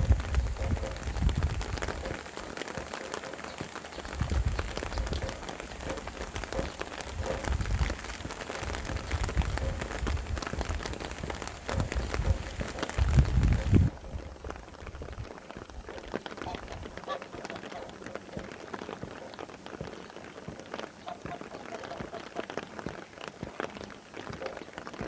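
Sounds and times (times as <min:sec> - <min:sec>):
wind gusts rumbling: 0:00.0 - 0:18.5
rain drops pattering: 0:00.0 - 0:25.0.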